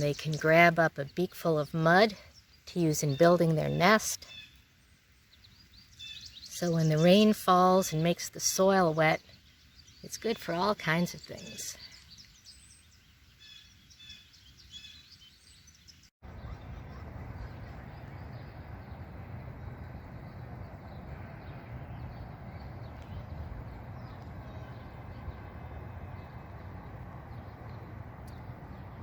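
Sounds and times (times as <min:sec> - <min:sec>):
bird chirps: 0:00.0 - 0:08.3, 0:08.9 - 0:19.0
low outdoor rushing noise: 0:16.2 - 0:29.0.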